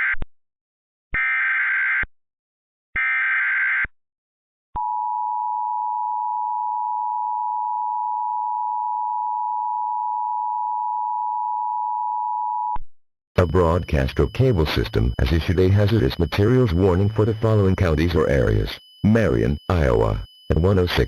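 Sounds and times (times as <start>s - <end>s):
screeching digital data bursts: 13.4s - 21.0s
steady two-tone attention signal: 13.4s - 21.0s.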